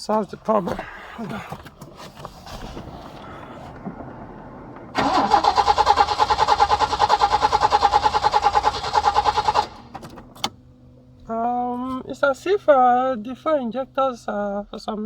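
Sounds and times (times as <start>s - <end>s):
engine cranking by starter motor: 3.8s - 10.6s.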